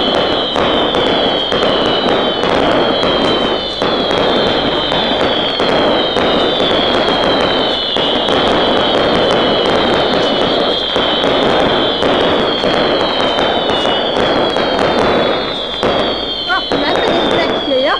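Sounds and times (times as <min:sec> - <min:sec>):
firework hissing and crackling: 0:00.0 - 0:17.9
high descending whistle: 0:00.0 - 0:17.9.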